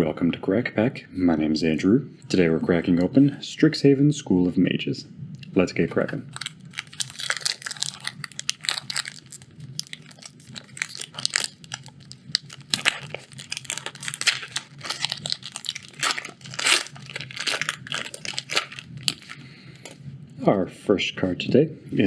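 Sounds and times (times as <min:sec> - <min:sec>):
foil wrapper tearing and crinkling: 0:06.3 - 0:20.0.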